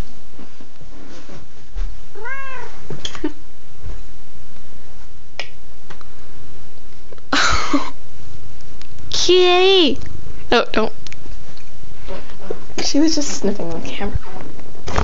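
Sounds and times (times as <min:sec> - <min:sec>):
cat meowing: 0:02.2 - 0:02.8.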